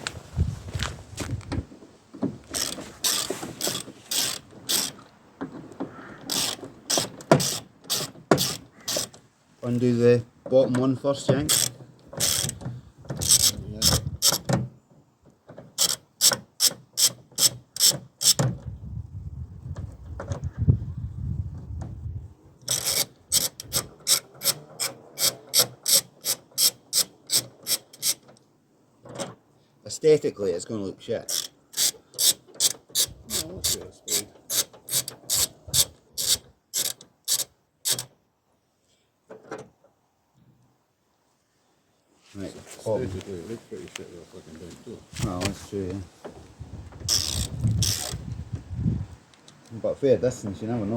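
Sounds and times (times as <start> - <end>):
socket ratchet clicking: 2.6 - 5.0, 6.3 - 9.2, 11.5 - 12.6, 13.2 - 14.5, 15.8 - 18.4, 22.7 - 28.2, 31.3 - 38.1, 47.1 - 48.2.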